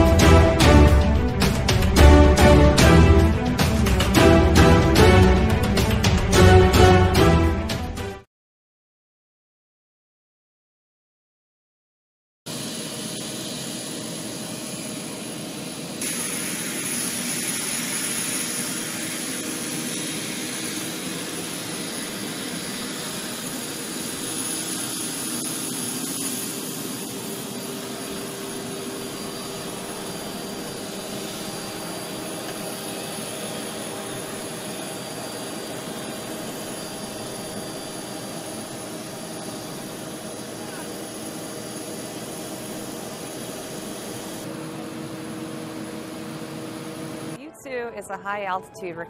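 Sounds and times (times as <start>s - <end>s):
jet engine high whine: 0.0s - 6.8s, 12.5s - 47.4s
jet engine rushing hiss: 12.5s - 44.5s.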